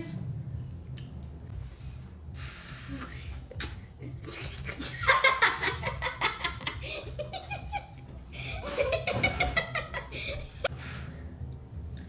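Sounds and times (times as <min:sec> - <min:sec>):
people laughing: 0:04.8 - 0:10.7.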